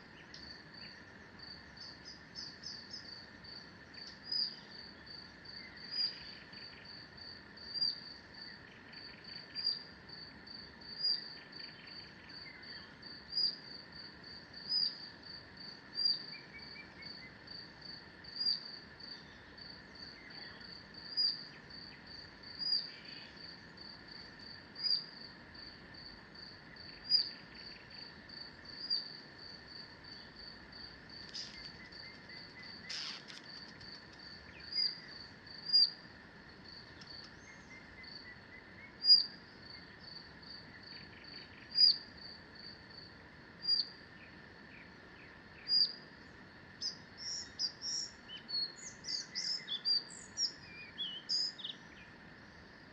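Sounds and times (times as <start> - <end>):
faint bird calls: 31.3 - 34.0.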